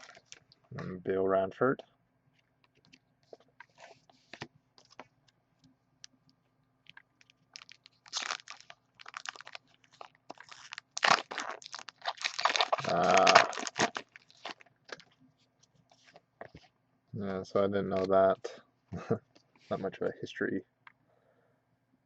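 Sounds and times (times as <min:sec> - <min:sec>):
foil wrappers crinkling and tearing: 0:00.0 - 0:00.5, 0:06.9 - 0:15.1.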